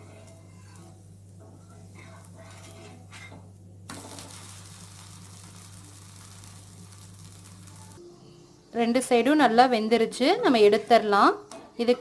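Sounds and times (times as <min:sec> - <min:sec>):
pancake sizzling in oil: 0:00.0 - 0:03.3, 0:03.9 - 0:08.0
low hum: 0:00.0 - 0:08.8.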